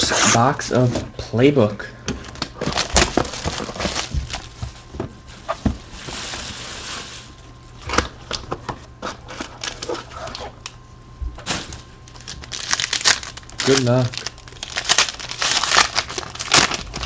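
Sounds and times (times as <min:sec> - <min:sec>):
faint electrical hum: 0:00.0 - 0:17.0
wrapper tearing: 0:02.2 - 0:04.6, 0:11.5 - 0:17.0
wrapper crinkling: 0:02.2 - 0:07.4, 0:11.4 - 0:17.0
cardboard rustling: 0:02.2 - 0:08.0, 0:11.4 - 0:17.0.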